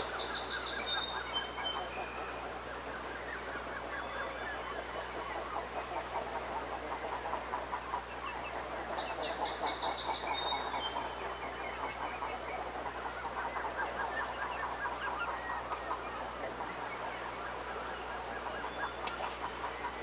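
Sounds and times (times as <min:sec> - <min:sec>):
songbird singing: 0:00.0 - 0:20.0
waterfowl flock calling: 0:00.0 - 0:20.0.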